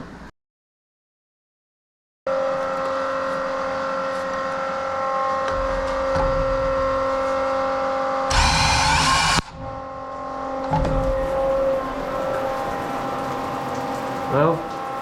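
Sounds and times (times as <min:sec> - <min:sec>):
motor running steadily: 0:06.8 - 0:09.8
loud rushing burst: 0:08.3 - 0:09.8.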